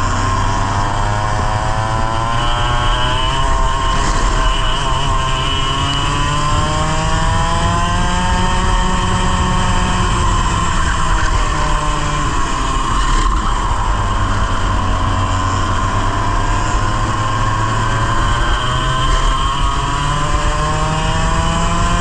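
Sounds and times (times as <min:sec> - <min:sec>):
two-stroke kart engine revving: 0:00.0 - 0:22.0.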